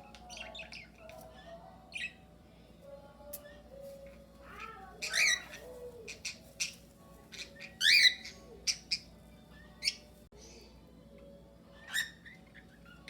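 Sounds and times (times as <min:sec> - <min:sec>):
soft warbling chatter: 0:00.0 - 0:13.0
shrill bird calls: 0:04.6 - 0:06.8, 0:07.4 - 0:10.1, 0:11.8 - 0:13.0.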